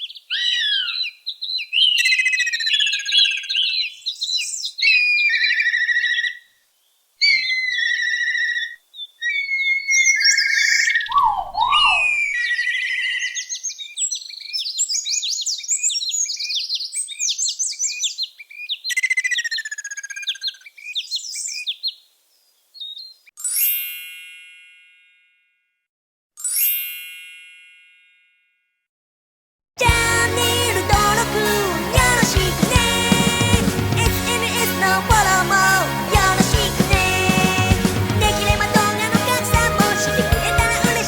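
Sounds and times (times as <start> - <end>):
songbird singing: 7.2 - 23.3
bell-like dings: 26.4 - 28.6.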